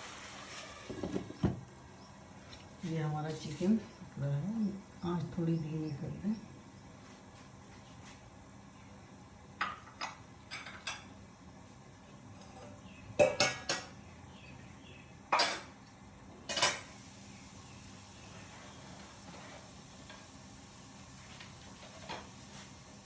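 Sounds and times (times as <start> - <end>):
metal utensils clinking on pot: 12.5 - 13.9, 15.4 - 15.7, 16.5 - 16.9.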